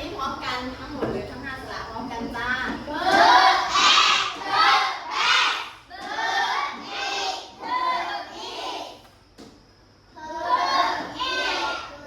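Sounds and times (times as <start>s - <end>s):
children chanting in unison: 3.0s - 9.0s, 10.1s - 12.0s.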